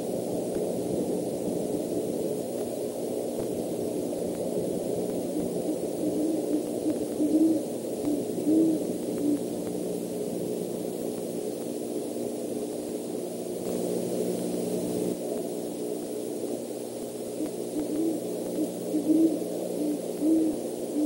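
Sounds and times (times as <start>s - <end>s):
microphone hum and hiss: 0.0s - 21.0s
owl hooting: 1.2s - 12.1s, 17.2s - 21.0s.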